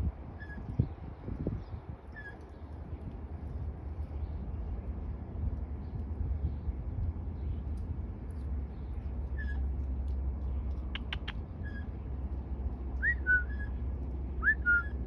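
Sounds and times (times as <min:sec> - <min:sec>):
steady low rumble: 0:00.0 - 0:15.0
blue jay clicks: 0:10.7 - 0:11.4.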